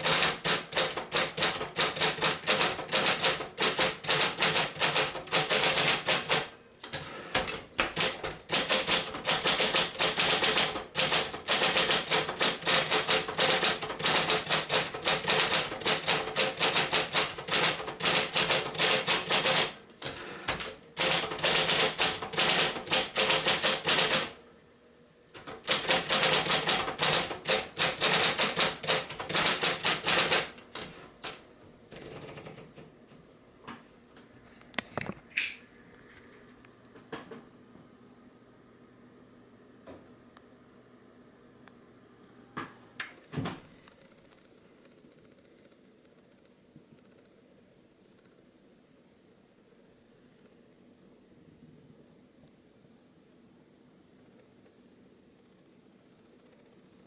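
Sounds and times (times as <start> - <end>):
typewriter key strikes: 0.0 - 6.5, 7.4 - 19.8, 20.5 - 24.4, 25.4 - 31.4
typewriter motor hum: 0.0 - 24.4, 25.4 - 32.6.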